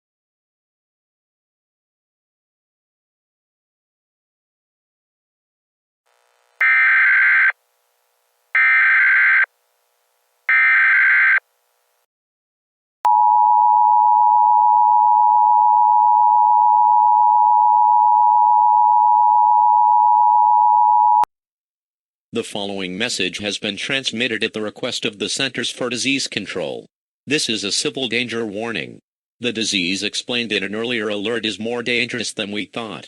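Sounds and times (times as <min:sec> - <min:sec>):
buzzy chirping data bursts: 0:06.1 - 0:07.6, 0:08.5 - 0:09.5, 0:10.5 - 0:11.4.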